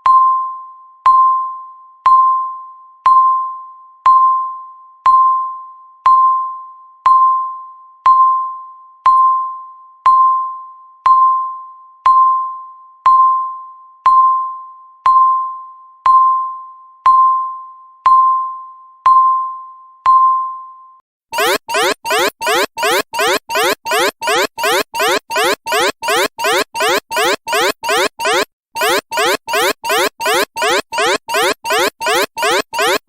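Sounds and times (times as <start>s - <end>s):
countdown timer beeping: 21.4s - 33.0s.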